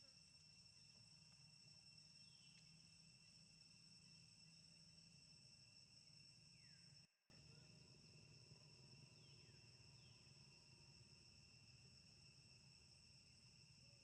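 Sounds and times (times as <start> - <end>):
faint insect drone: 0.0 - 14.0.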